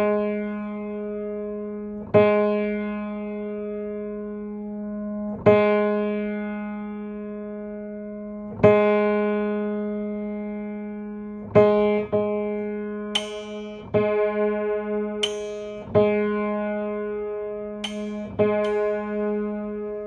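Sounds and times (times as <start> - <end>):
sharp snapping clicks: 13.2 - 14.0, 15.2 - 16.0, 17.8 - 19.4
guitar string plucked: 13.2 - 14.3, 15.0 - 16.3, 17.8 - 20.0.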